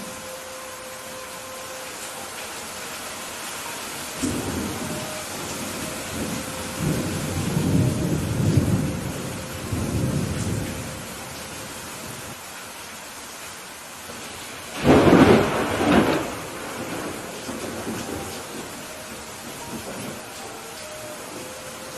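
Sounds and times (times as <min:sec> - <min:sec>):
steady rain falling: 0:00.0 - 0:21.9
thunder rolling: 0:04.2 - 0:11.3, 0:14.7 - 0:20.4.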